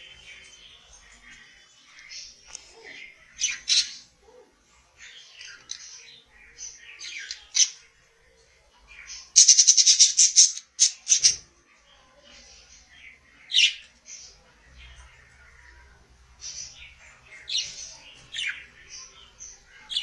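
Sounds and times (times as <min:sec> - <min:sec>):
budgerigars chirping and warbling: 0:03.3 - 0:04.1, 0:05.1 - 0:07.8, 0:09.0 - 0:11.4, 0:13.4 - 0:14.4
sharp loud bird chirps: 0:09.4 - 0:11.4.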